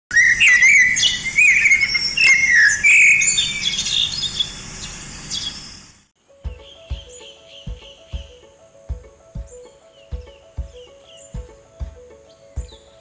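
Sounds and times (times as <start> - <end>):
wild birds calling: 0.1 - 6.0.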